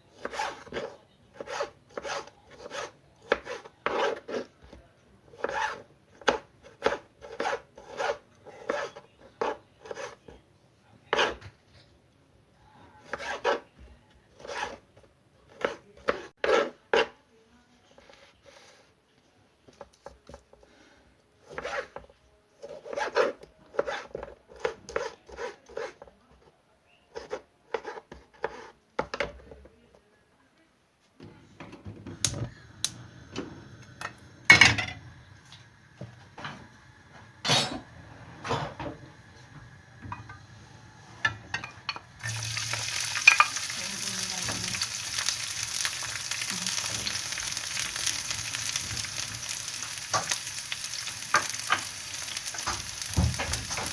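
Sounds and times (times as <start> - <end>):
kitchen utensils knocking and clinking: 34.0 - 35.1, 37.4 - 39.1, 41.2 - 45.0, 49.8 - 50.4, 51.0 - 53.9
food sizzling in a hot pan: 39.3 - 53.9.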